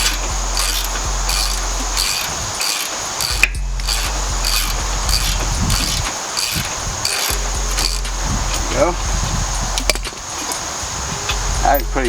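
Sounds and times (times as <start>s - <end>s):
sharp metallic clink: 0.0s - 9.0s
hand ratchet clicking: 0.0s - 10.8s.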